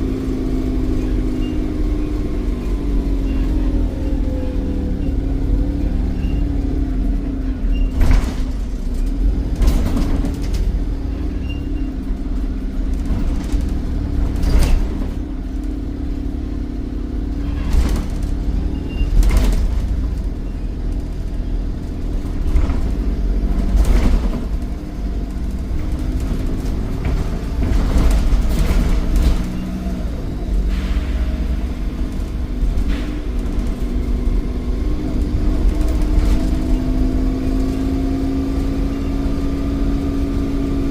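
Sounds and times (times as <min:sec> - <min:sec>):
bus diesel engine rumbling: 0:00.0 - 0:40.9
sharp knocks and rattles: 0:17.5 - 0:38.0.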